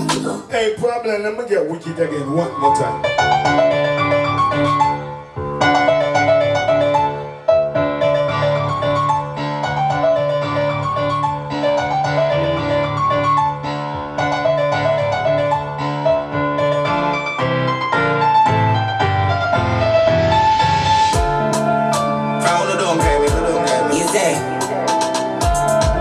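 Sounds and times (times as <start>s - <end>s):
piano melody: 0.0s - 0.5s, 1.9s - 26.0s
bass line: 0.0s - 0.6s, 19.2s - 26.0s.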